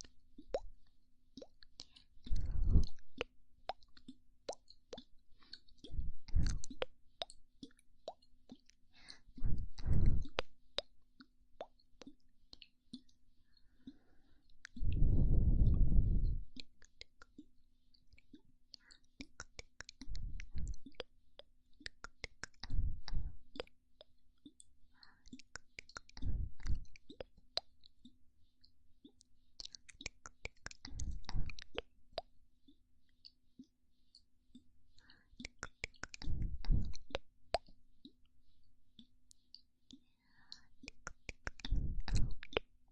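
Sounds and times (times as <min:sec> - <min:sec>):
wet lip pops and tongue clicks: 0:00.0 - 0:13.2, 0:13.8 - 0:38.3, 0:39.0 - 0:42.7
breath blown into microphone: 0:02.3 - 0:03.0, 0:09.1 - 0:10.4, 0:13.8 - 0:16.5, 0:26.2 - 0:26.9, 0:36.2 - 0:37.0, 0:41.5 - 0:42.5.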